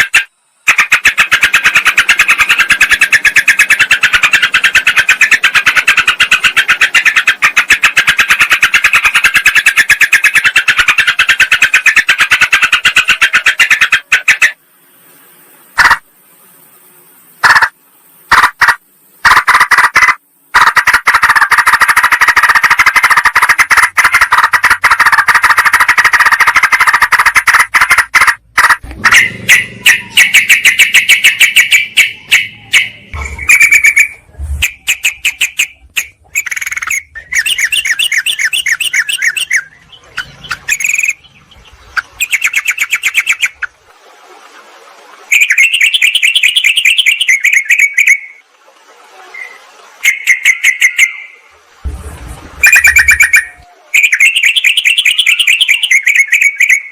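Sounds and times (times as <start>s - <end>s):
bulbuls chirping: 0.0s - 14.6s, 22.5s - 43.8s, 45.3s - 48.4s, 49.3s - 51.5s, 52.6s - 56.9s.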